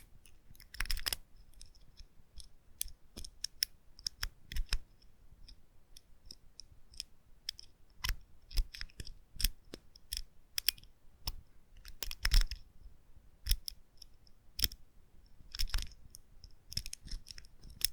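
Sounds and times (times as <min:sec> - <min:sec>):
lock pick clicking: 0:00.6 - 0:01.7, 0:14.6 - 0:14.8.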